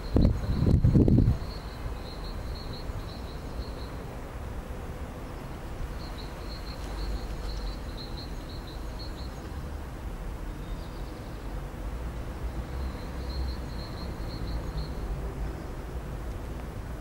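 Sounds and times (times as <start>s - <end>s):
small bird chirping: 5.9s - 9.6s, 12.6s - 15.7s.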